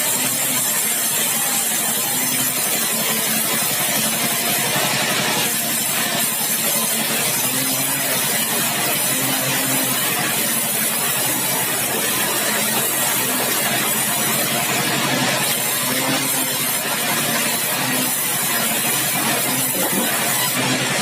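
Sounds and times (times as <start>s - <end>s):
sawmill machinery hiss: 0.0s - 21.0s.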